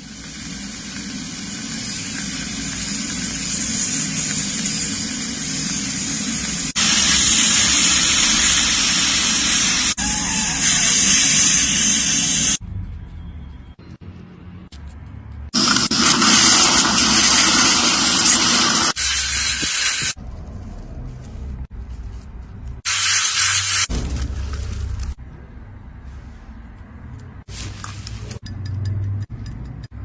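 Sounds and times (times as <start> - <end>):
dental equipment spraying hiss: 0.0 - 12.6.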